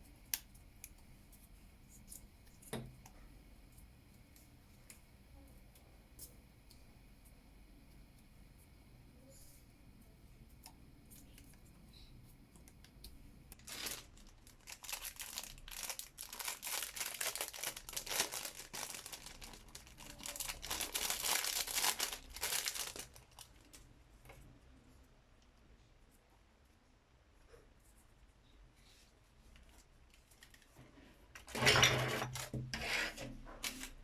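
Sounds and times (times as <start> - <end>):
crinkling and crackling: 10.5 - 24.6, 28.8 - 34.0.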